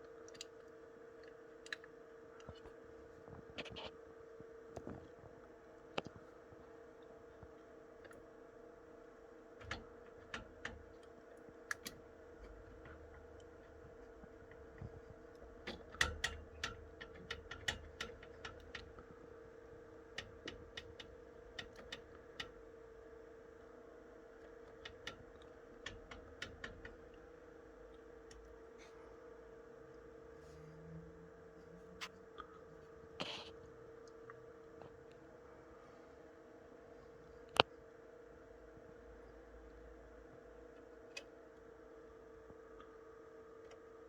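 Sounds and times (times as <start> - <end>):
small parts clicking and tapping: 0.0 - 3.9, 9.6 - 22.7, 24.4 - 28.6
faint steady hum: 0.0 - 44.0.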